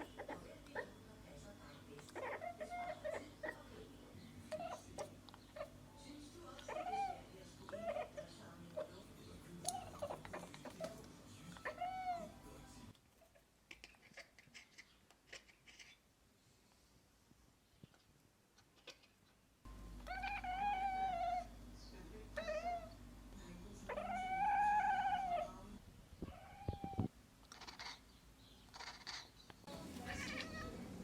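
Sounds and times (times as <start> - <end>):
cat chirping and meowing: 2.2 - 3.6, 6.6 - 8.2, 11.5 - 12.4, 20.0 - 21.5, 22.4 - 23.0, 23.9 - 28.1, 28.7 - 29.4, 30.0 - 30.9.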